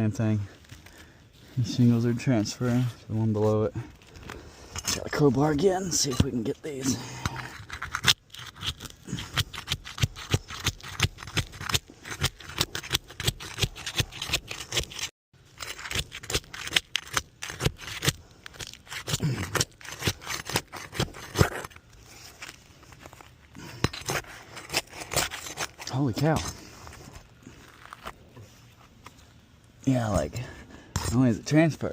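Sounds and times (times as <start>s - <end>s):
crowbar scraping under shingles: 4.3s - 28.6s
shingles crackling and tearing: 7.4s - 28.2s.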